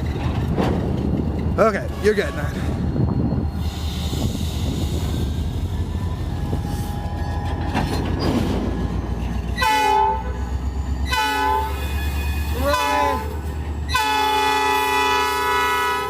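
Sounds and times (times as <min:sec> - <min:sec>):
locomotive air horn blasts: 0:09.6 - 0:16.0.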